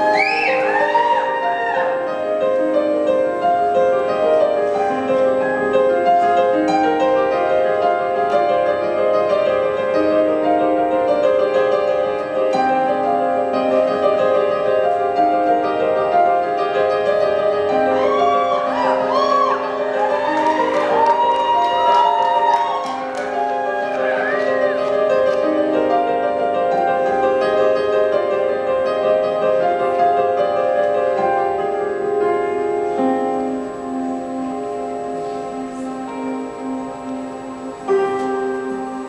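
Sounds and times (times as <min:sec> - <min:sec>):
piano playing chords: 0:00.0 - 0:39.0
woman singing: 0:18.0 - 0:24.8.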